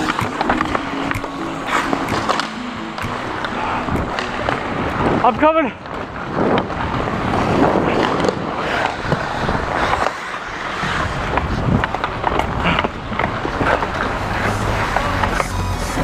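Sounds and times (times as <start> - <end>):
sticks and puck clacking: 0.0 - 5.1, 5.9 - 16.0
music: 0.0 - 5.2, 14.0 - 16.0
hockey skates scraping on ice: 5.9 - 15.4.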